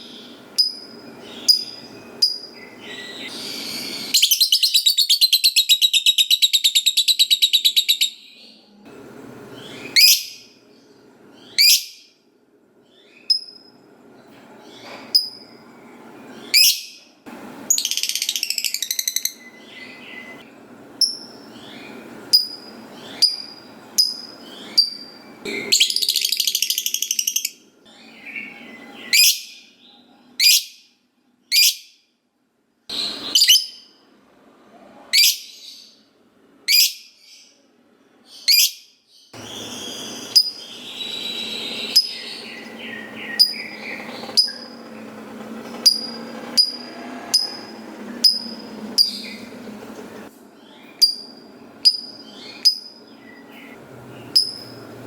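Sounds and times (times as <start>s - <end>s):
bird chattering trills: 21.0s - 29.6s, 39.4s - 49.8s
bird sharp chirps: 38.4s - 44.8s.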